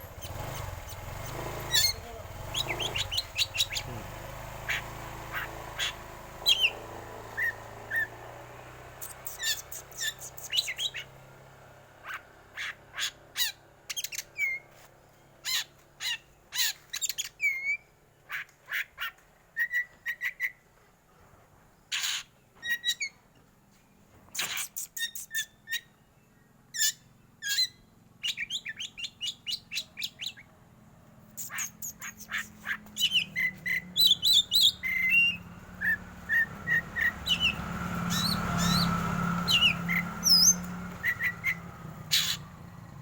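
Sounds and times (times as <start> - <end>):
bird calling harsh and whistled notes: 0.1 - 4.0, 4.6 - 8.2, 9.0 - 11.1, 15.4 - 20.6, 24.4 - 26.0, 31.4 - 42.5.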